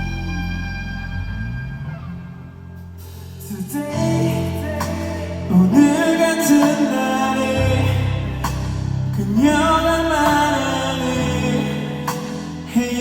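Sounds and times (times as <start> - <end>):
band accompaniment: 0.0 - 13.0
man singing live: 3.4 - 13.0.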